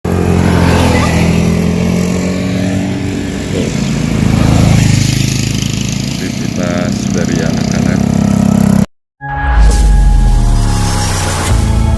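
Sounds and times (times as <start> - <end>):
motorcycle engine running: 0.1 - 8.9.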